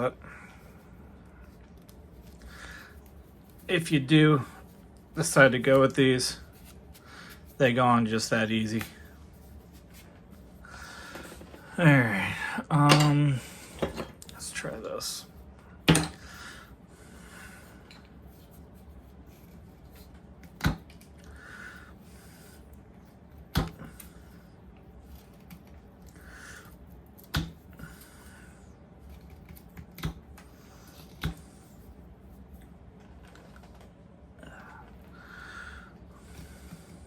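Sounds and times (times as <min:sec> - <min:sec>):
knife shaving wood: 0:00.0 - 0:11.1, 0:16.3 - 0:33.7.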